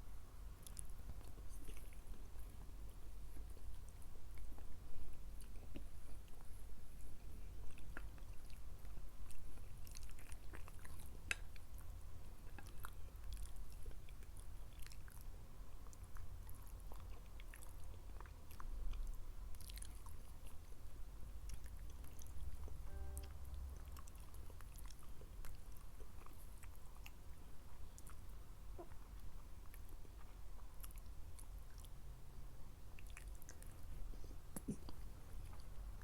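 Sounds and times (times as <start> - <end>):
person chewing food: 0.6 - 23.2, 32.9 - 35.9.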